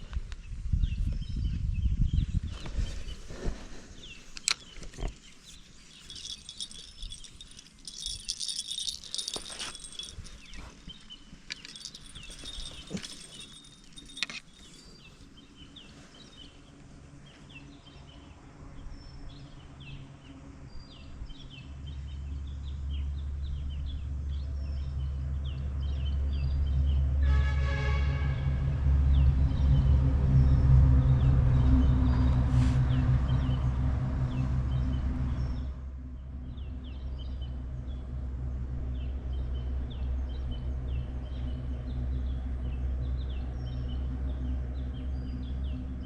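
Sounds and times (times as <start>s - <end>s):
engine hum: 3.8s - 16.0s, 28.2s - 46.0s
clicks and rattles: 5.9s - 10.7s, 11.4s - 14.8s.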